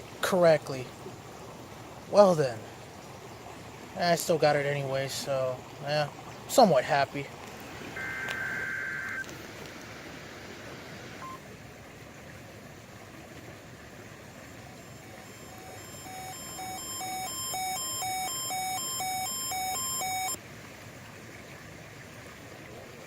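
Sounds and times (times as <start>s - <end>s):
radio hiss: 7.7s - 9.8s
alternating two-tone alarm: 8.0s - 9.2s, 11.2s - 11.4s, 14.8s - 20.4s.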